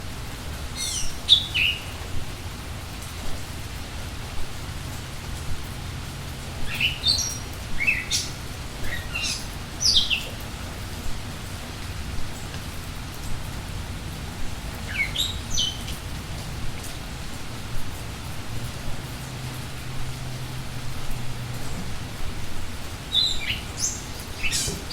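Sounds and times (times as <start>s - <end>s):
rain hissing: 0.0s - 24.9s
small bird chirping: 0.8s - 1.9s, 6.7s - 10.3s, 23.1s - 24.9s.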